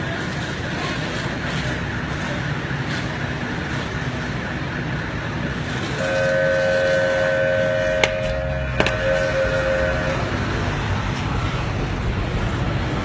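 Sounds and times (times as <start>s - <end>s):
traffic noise: 0.0s - 13.0s
vehicle horn two-note blast: 6.0s - 10.4s.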